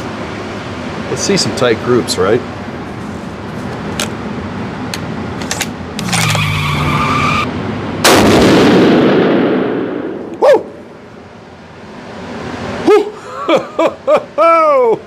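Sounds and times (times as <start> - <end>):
rifle shot with echo: 8.0 - 10.3
person shouting: 10.4 - 10.8, 12.8 - 13.2, 14.4 - 15.0.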